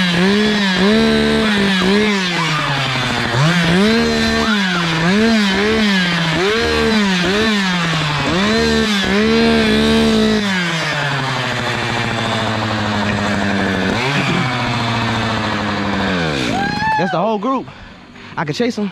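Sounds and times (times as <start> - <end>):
chainsaw engine revving: 0.0 - 18.9.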